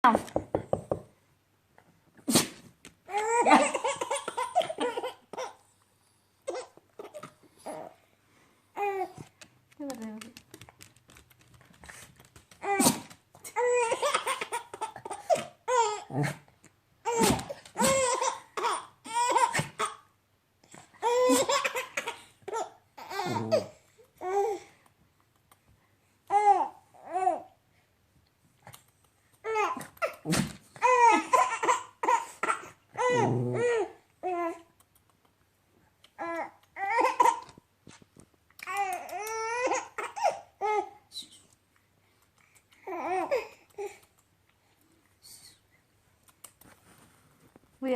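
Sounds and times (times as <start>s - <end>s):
baby laughing: 3.1s - 5.6s, 12.6s - 16.1s, 17.1s - 20.1s, 21.0s - 23.7s, 29.4s - 33.9s, 36.8s - 37.6s.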